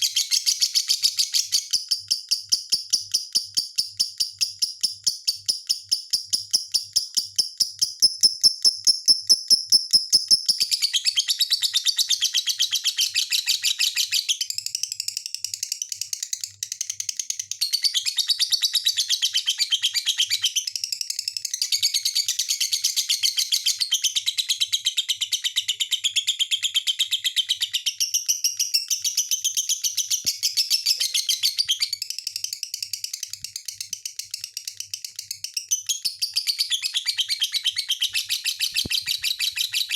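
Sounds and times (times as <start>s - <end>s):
lovebird chirping: 0.0s - 14.5s, 21.6s - 32.1s, 35.7s - 39.9s.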